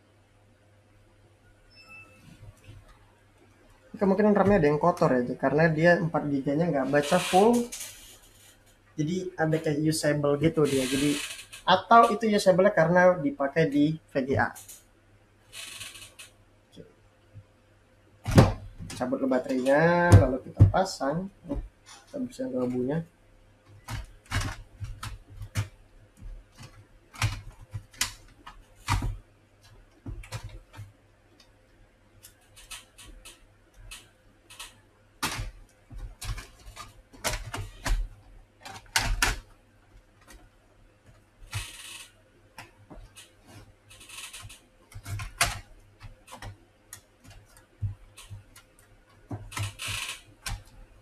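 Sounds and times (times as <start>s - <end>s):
plastic laptop casing clicks: 23.8s - 25.7s, 34.5s - 39.4s.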